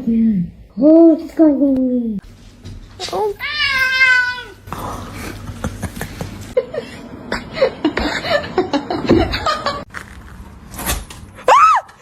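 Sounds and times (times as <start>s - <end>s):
soft chuckling laughter: 5.1s - 9.8s.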